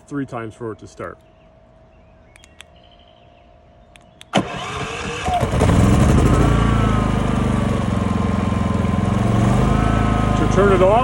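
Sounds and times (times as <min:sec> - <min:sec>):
faint clicks: 0:02.3 - 0:02.7
generator engine starting and running: 0:04.2 - 0:11.0.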